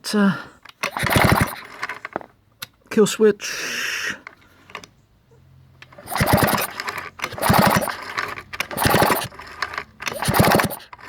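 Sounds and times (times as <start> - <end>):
chainsaw recoil starter whirring: 0.8 - 2.1, 5.9 - 11.0.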